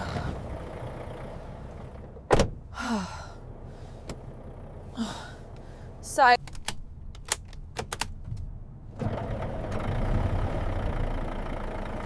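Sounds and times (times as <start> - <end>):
low steady rumble: 0.0 - 12.0
heavy thunk: 2.3 - 2.6.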